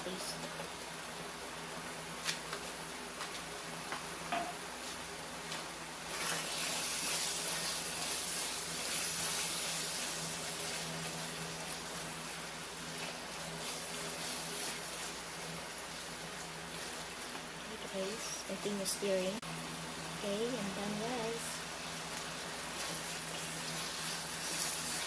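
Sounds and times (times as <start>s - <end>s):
sauce sizzling in a pan: 3.5s - 25.0s.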